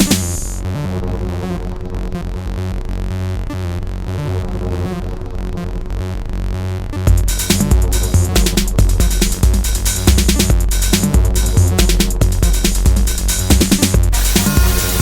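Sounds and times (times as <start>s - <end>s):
synth bass: 0.0s - 15.0s.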